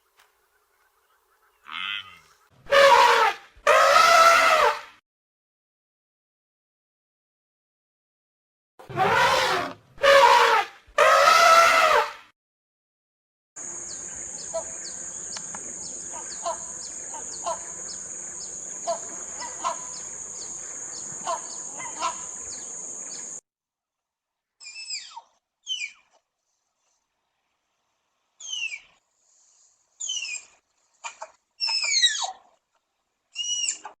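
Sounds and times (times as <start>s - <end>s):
drawn-out animal calls: 1.6s - 4.7s, 16.0s - 22.8s.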